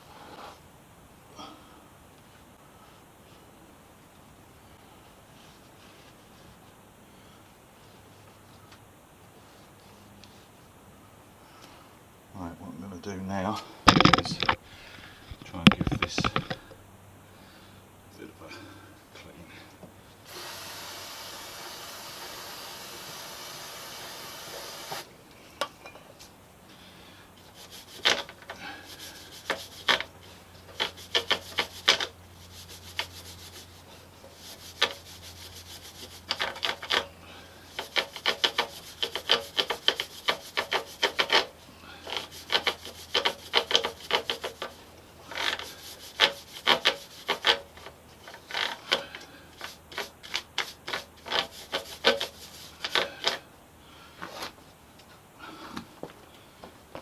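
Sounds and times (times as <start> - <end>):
brush scrubbing a chain: 27.4 - 53.4
spray can hissing: 30.7 - 33.7.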